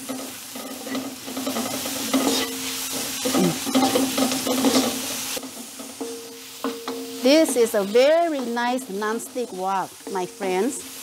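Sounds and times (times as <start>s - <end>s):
food sizzling in oil: 0.0s - 11.0s.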